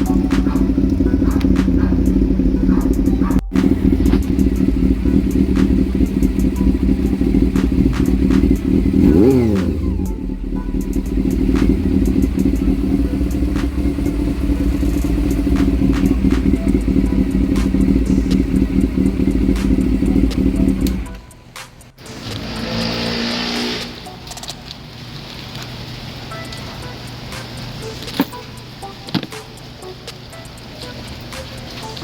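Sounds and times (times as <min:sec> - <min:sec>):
motorcycle engine idling: 0:00.0 - 0:24.1.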